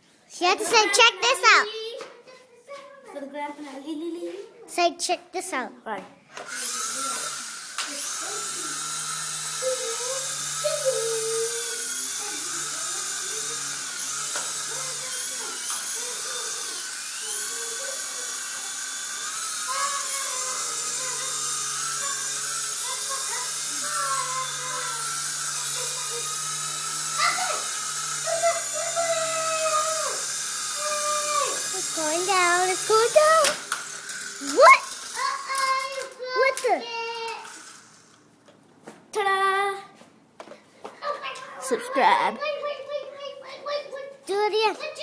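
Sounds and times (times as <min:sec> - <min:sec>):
small helicopter whine: 0:06.3 - 0:38.3.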